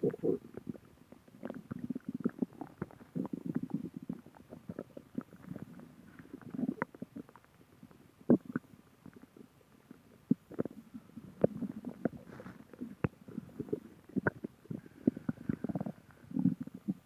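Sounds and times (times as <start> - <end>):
stomach growling: 0.0 - 17.0
stomach pops and squelches: 10.3 - 17.0.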